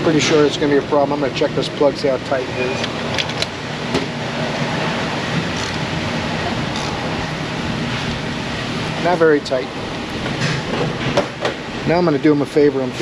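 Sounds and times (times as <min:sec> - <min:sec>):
mechanical rumble with low hum: 0:00.0 - 0:13.0.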